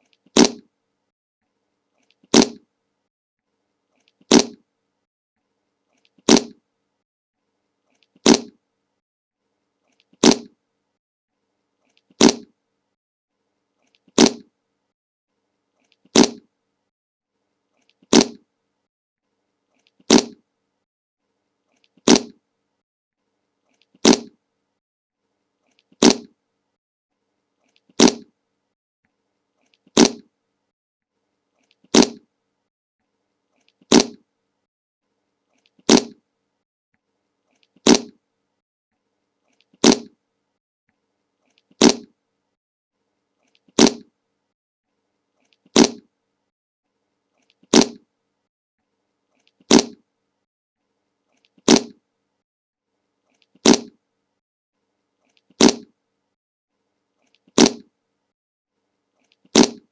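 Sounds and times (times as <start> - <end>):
fart sound effect: 0.3 - 0.7, 2.3 - 2.6, 4.3 - 4.6, 6.2 - 6.6, 8.2 - 8.6, 10.2 - 10.6, 12.2 - 12.5, 14.2 - 14.5, 16.1 - 16.5, 18.1 - 18.4, 20.1 - 20.4, 22.0 - 22.4, 24.0 - 24.4, 26.0 - 26.3, 28.0 - 28.3, 30.0 - 30.3, 31.9 - 32.2, 33.9 - 34.2, 35.9 - 36.2, 37.8 - 38.2, 39.8 - 40.2, 41.8 - 42.1, 43.8 - 44.0, 45.8 - 46.0, 47.7 - 48.0, 49.7 - 50.0, 51.7 - 52.0, 53.6 - 53.9, 55.6 - 55.9, 57.6 - 57.8, 59.6 - 59.9.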